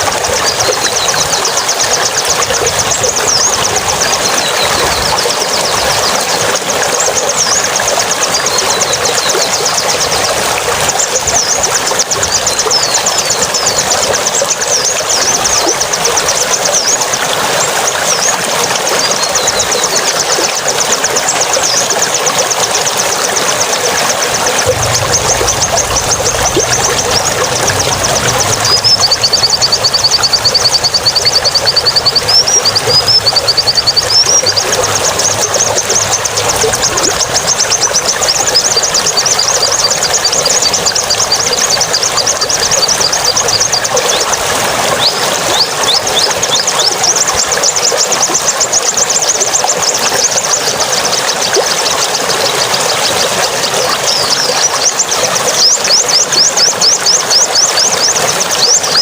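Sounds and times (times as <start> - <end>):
songbird trilling: 23.6 - 44.4.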